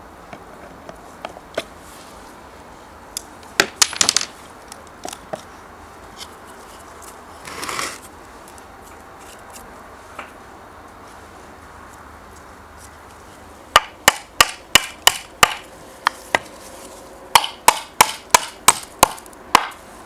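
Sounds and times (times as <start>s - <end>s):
scraping rustle: 5.4s - 10.2s, 16.2s - 17.2s.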